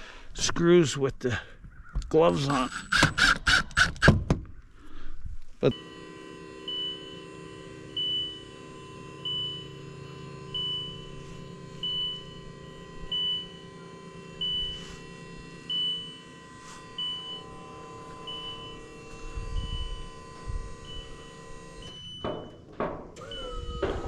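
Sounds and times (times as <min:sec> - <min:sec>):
high warning beeps: 0:02.4 - 0:03.0, 0:08.0 - 0:08.5, 0:09.2 - 0:09.8, 0:10.5 - 0:11.2, 0:11.8 - 0:13.7, 0:14.4 - 0:16.3, 0:17.0 - 0:17.6, 0:18.2 - 0:20.2, 0:20.8 - 0:24.0
steady hum: 0:05.0 - 0:24.0.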